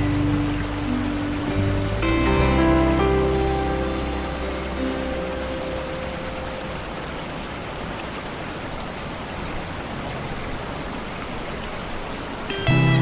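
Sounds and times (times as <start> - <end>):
held musical note: 0.0 - 7.2
rain falling on a lake: 0.0 - 13.0.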